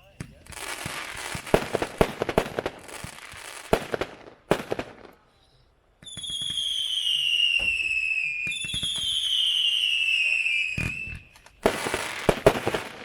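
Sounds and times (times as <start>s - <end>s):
firework bangs and crackling pops: 0.0s - 5.2s, 6.0s - 13.0s
firework whistles falling in pitch: 6.0s - 12.1s.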